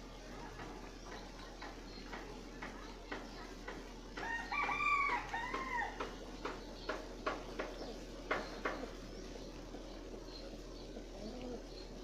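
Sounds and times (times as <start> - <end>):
pigeons pecking feed: 0.0 - 12.0
rooster crowing: 4.2 - 6.0.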